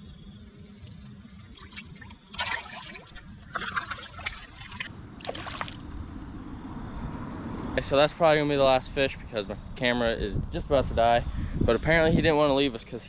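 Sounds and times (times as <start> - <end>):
fish splashing in shallow water: 0.8 - 6.0.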